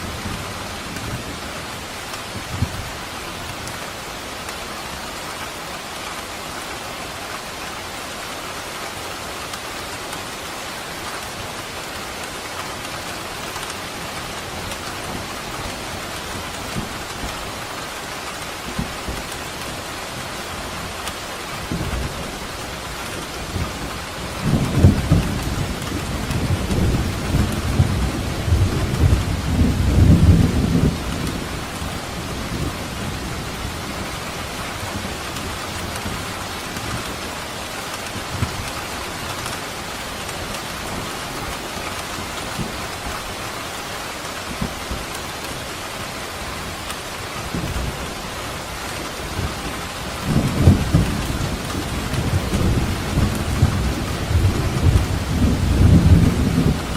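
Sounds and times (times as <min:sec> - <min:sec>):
steady rain falling: 0:00.0 - 0:56.9
rolling thunder: 0:24.4 - 0:34.1, 0:49.4 - 0:56.9.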